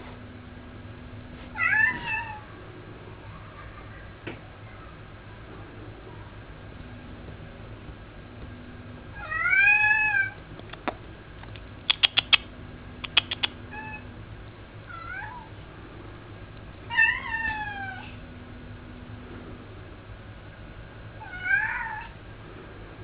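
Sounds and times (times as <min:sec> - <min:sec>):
cat meowing: 0:01.6 - 0:02.5, 0:09.2 - 0:10.4, 0:13.3 - 0:14.1, 0:14.9 - 0:15.5, 0:16.9 - 0:18.2, 0:21.2 - 0:22.2
sharp clicks: 0:10.6 - 0:13.6.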